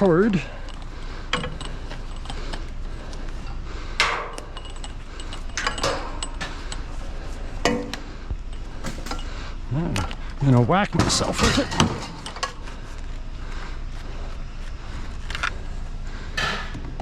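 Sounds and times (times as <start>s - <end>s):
scrap metal knocks and clinks: 0.6s - 2.6s, 3.4s - 6.9s.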